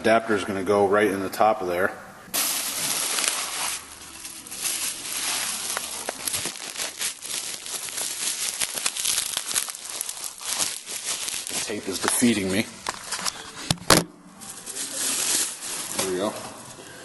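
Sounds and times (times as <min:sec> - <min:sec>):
tape tearing: 0:02.4 - 0:13.4
packaging crinkling: 0:02.4 - 0:13.5, 0:14.5 - 0:16.7.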